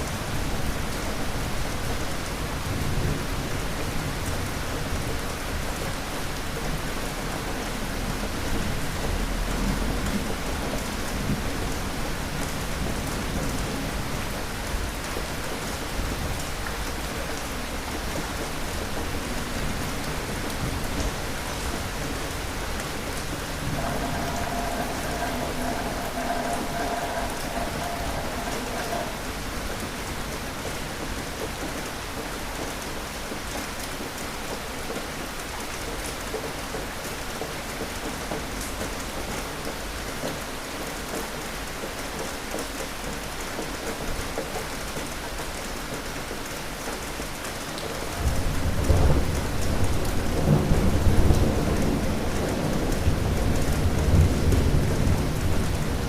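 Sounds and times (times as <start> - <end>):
steady rain falling: 0.0 - 56.0
low rolling thunder: 19.8 - 30.5, 48.0 - 56.0.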